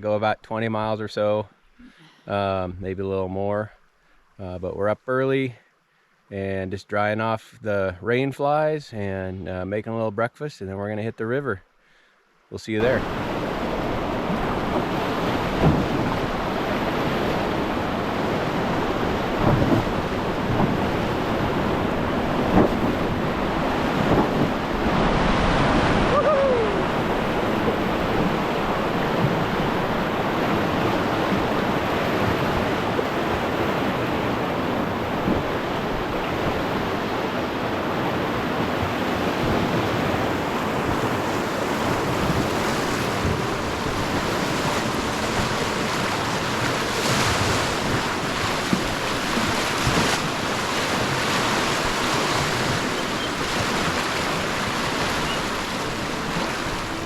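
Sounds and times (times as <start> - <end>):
river water rushing: 12.8 - 57.0
wind buffeting microphone: 13.0 - 57.0.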